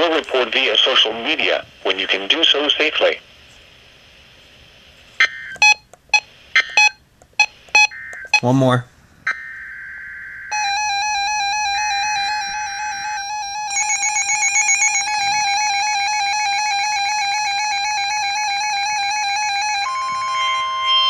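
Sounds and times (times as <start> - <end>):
warbling electronic alert tone: 9.3 - 16.6.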